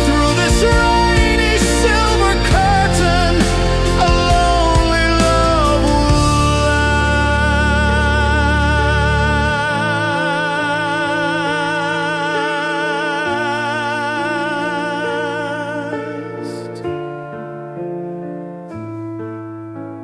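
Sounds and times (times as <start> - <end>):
slow bass: 0.0 - 12.4
sustained chords: 0.0 - 16.6.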